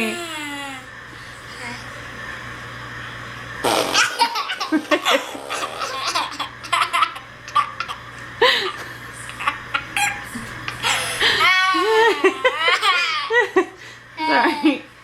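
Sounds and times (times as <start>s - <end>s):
toddler laughing: 4.0s - 13.6s.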